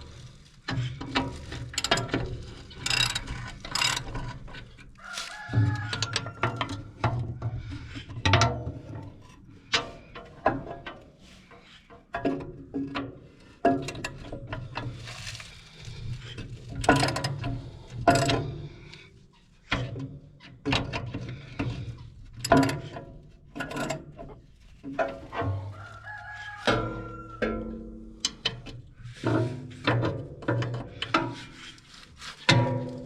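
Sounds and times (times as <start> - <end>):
wrenches clanking on bolts: 0.7 - 7.3, 16.4 - 18.8, 22.4 - 24.3
rooster crowing: 5.0 - 6.8, 25.6 - 27.8.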